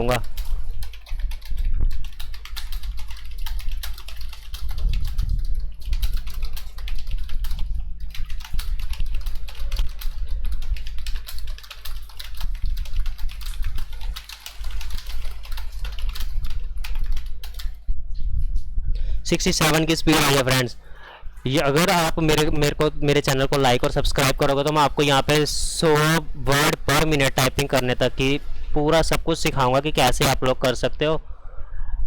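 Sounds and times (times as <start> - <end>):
fast typing on a keyboard: 0.0 - 17.8, 21.7 - 28.0, 29.0 - 30.5
steady low hum: 0.0 - 32.0.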